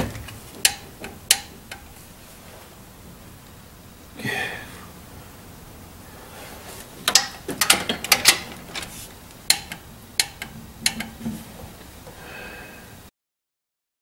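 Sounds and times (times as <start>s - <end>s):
torque wrench clicking: 0.6s - 1.9s, 7.1s - 8.6s, 9.4s - 11.2s.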